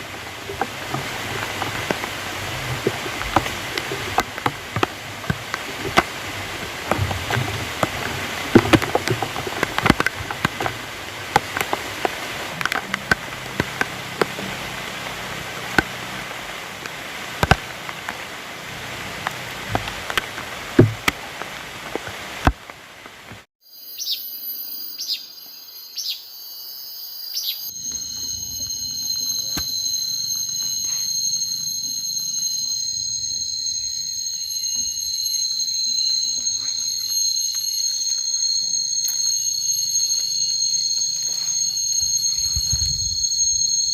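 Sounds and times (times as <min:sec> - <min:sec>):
insects trilling: 0:00.0 - 0:21.4, 0:23.6 - 0:43.9
heavy rain with drip taps: 0:00.0 - 0:23.5.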